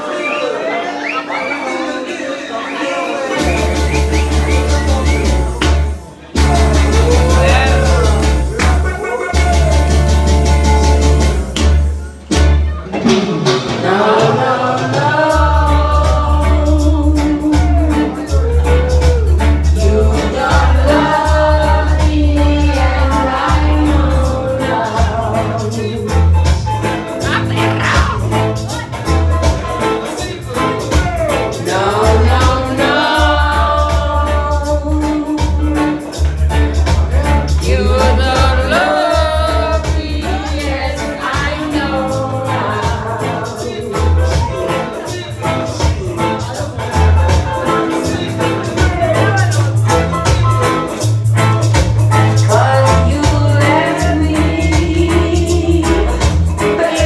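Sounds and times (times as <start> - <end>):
loud music with singing: 0.0 - 57.0.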